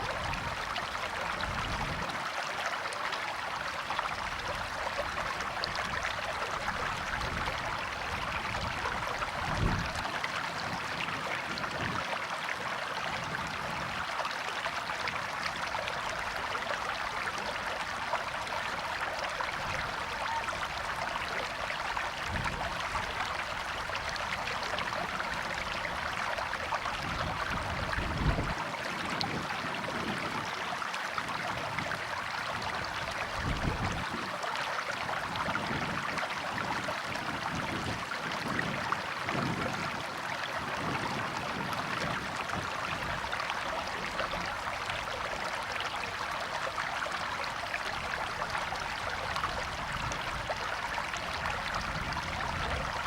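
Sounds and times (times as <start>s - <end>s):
river water flowing: 0.0s - 53.0s.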